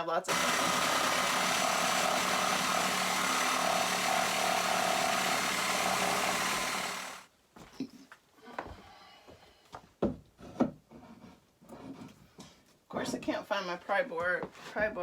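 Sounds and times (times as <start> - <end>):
power tool running: 0.3 - 7.3.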